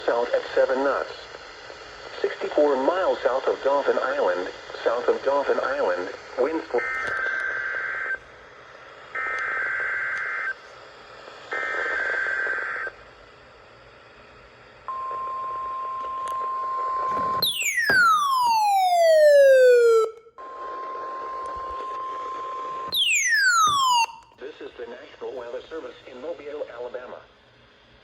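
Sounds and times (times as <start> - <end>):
falling electronic siren sweep: 17.1 - 20.3, 22.9 - 24.4
steady warning alarm tone: 17.1 - 20.3, 22.8 - 24.4.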